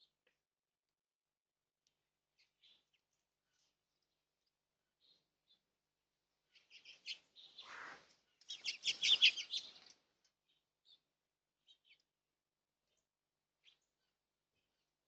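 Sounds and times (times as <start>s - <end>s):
small birds chirping: 2.4s - 5.8s, 6.4s - 12.2s, 12.8s - 14.8s.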